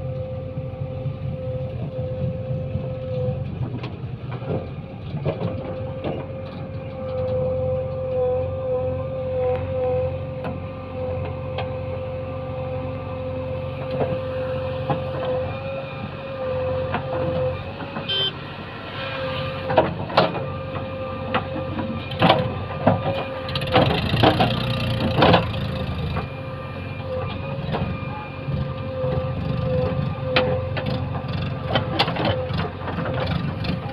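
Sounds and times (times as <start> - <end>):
diesel engine running with whine: 0.0 - 33.9
sharp knocks and clatter: 19.6 - 26.3.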